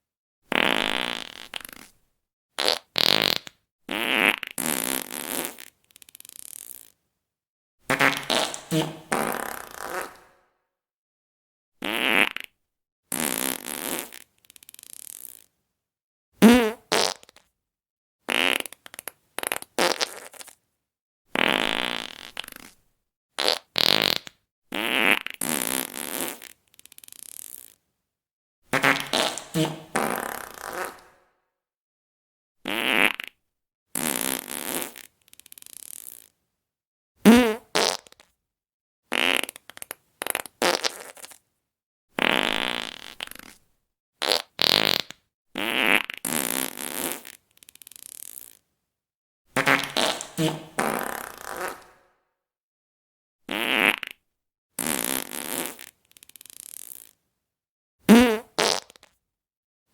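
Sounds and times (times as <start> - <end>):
fart sound effects: 0.5 - 1.9, 2.6 - 6.9, 7.9 - 10.4, 11.8 - 12.5, 16.4 - 17.4, 18.3 - 20.6, 21.4 - 22.7, 23.4 - 27.8, 28.8 - 31.3, 32.7 - 33.4, 37.2 - 38.2, 39.1 - 41.4, 42.2 - 43.6, 44.2 - 48.6, 49.6 - 52.1, 53.5 - 54.2, 54.8 - 57.2, 58.1 - 59.1.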